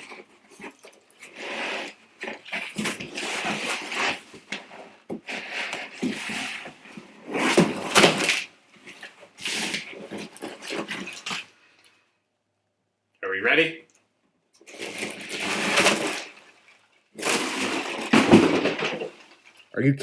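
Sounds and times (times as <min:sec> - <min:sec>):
packing filler rustling in a box: 0:14.7 - 0:19.6.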